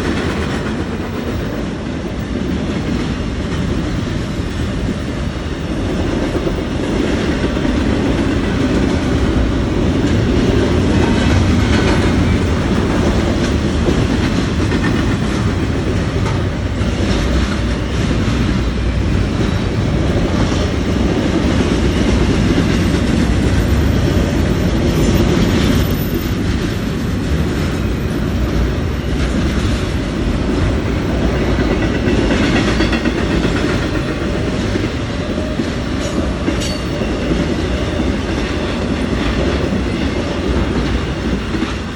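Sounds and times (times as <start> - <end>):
freight train rumbling past: 0.0 - 41.9
wheels clacking over rail joints: 2.8 - 41.9.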